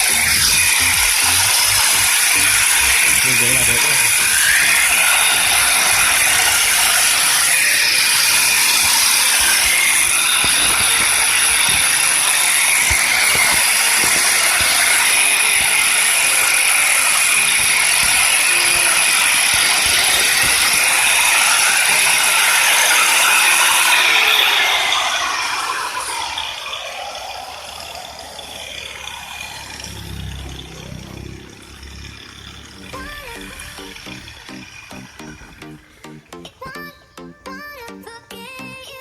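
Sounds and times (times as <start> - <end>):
rattling noise: 0.0 - 23.3
power cutter high whine: 0.0 - 36.3.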